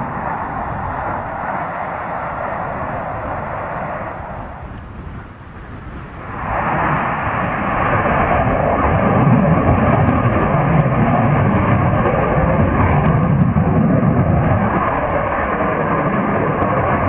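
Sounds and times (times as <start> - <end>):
plane flying past: 0.0 - 17.0.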